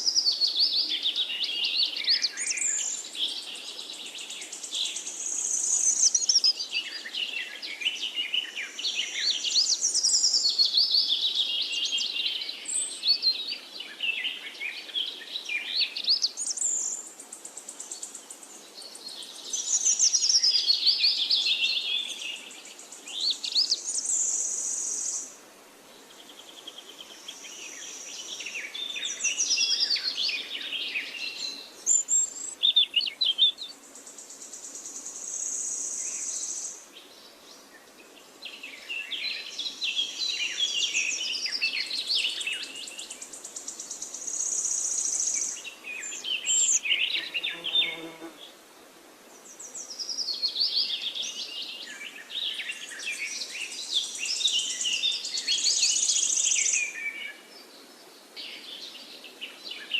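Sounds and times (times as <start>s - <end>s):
birds chirping and singing: 38.5s - 48.4s.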